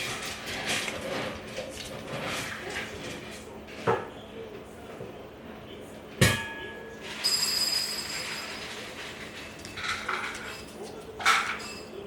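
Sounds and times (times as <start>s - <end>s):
dishes clattering: 6.2s - 12.0s
dishes clinking: 6.2s - 12.0s.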